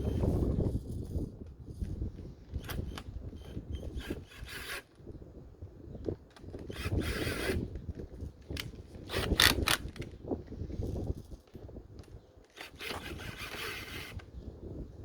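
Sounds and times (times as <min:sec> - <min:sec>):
mechanical clicks and rubbing: 0:12.4 - 0:14.3
scraping rasping bursts: 0:12.6 - 0:14.2.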